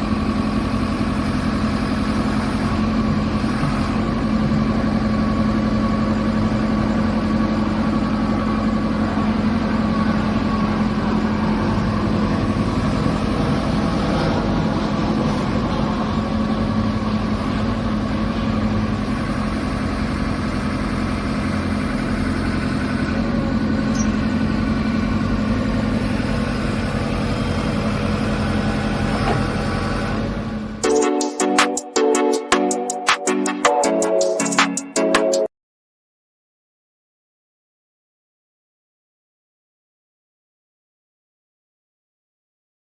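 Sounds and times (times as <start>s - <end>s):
diesel engine idling: 0.0s - 31.2s.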